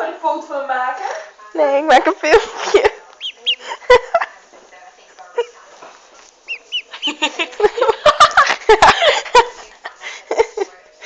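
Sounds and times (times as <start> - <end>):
duckling peeping: 3.1 - 4.0, 6.4 - 7.6.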